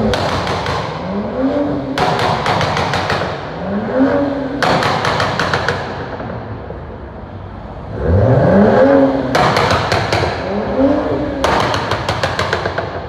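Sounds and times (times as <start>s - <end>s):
car exhaust revving: 0.0s - 13.0s.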